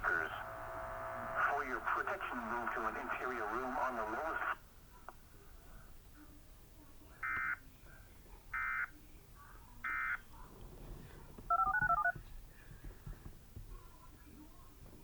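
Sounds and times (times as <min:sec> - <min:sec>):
touch-tone beeps: 0:11.5 - 0:12.2.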